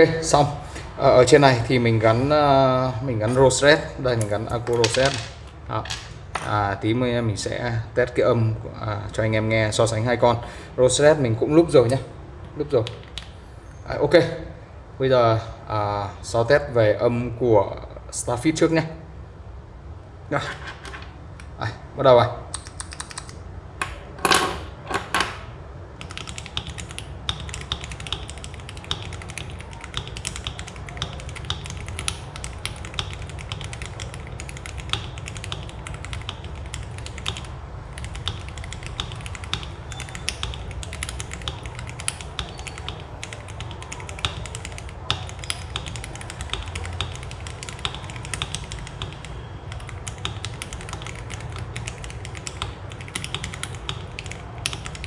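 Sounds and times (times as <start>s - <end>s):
mechanical keyboard typing: 22.5s - 23.4s, 26.0s - 55.0s.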